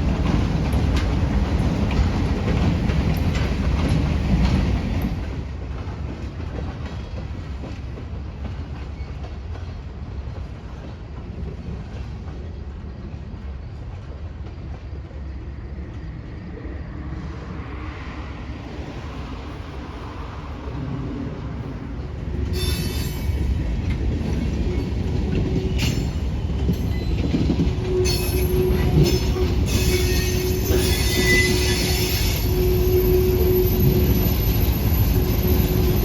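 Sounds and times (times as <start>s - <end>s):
train wheels clicking over rail joints: 0.0s - 13.2s, 22.2s - 36.0s
freight train rolling past: 0.0s - 36.0s.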